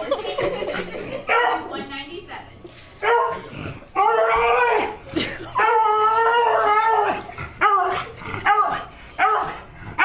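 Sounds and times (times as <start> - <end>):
dog howling: 3.1 - 5.0, 5.6 - 9.6.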